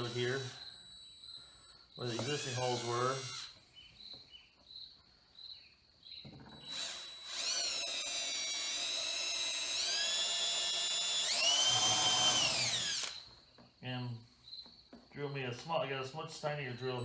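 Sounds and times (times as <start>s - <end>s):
power drill whining: 0.0s - 3.7s, 6.2s - 13.4s.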